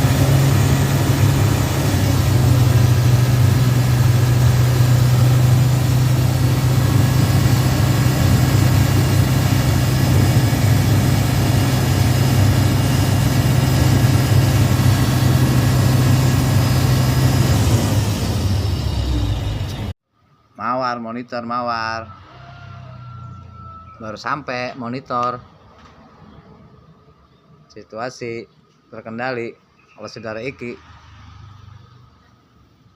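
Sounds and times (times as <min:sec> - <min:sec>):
diesel truck engine running: 0:00.0 - 0:20.0.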